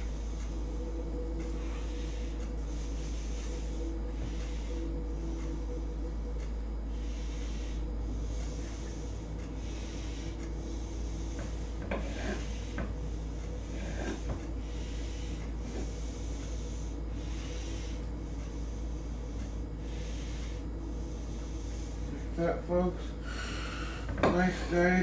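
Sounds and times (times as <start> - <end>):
steady hum: 0.0 - 25.0.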